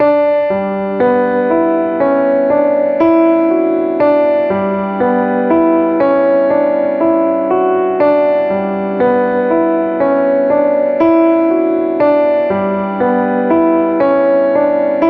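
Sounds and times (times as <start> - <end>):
electric piano chords: 0.0 - 15.0.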